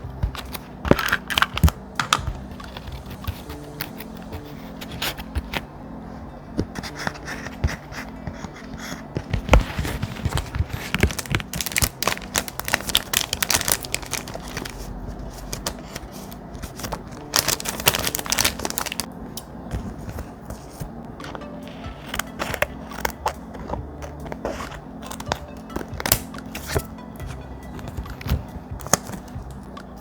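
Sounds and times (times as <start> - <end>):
thick paper rustling and crinkling: 9.2 - 19.1.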